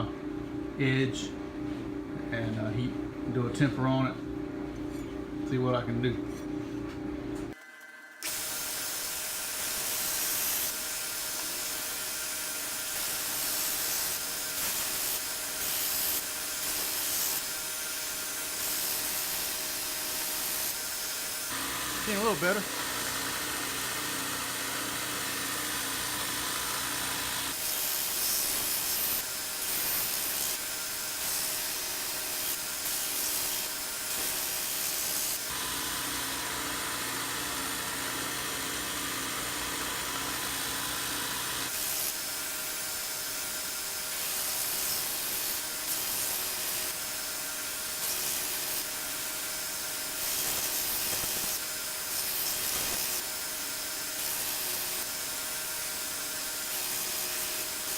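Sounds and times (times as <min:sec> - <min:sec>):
blade grinding on sander belt: 0:08.2 - 0:57.9
belt sander motor hum: 0:20.4 - 0:33.0, 0:34.0 - 0:42.4.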